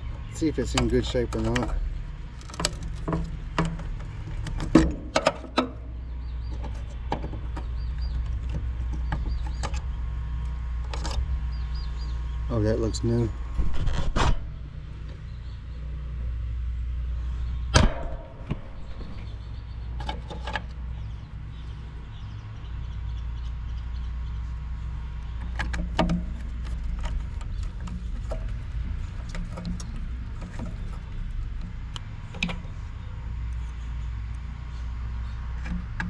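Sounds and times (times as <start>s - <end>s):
sharp clicks and knocks: 0.0s - 12.0s, 17.6s - 21.8s, 25.2s - 34.5s, 35.2s - 36.0s
steady low hum: 0.0s - 36.0s.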